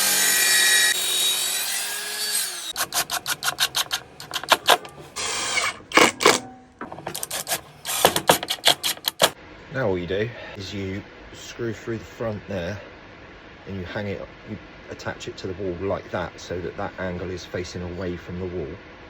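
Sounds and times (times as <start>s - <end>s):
power tool burst: 0.0s - 6.4s, 7.0s - 9.4s
power saw running: 0.0s - 9.4s
knocks and clicks of wood and tools: 2.8s - 5.0s, 5.6s - 9.4s.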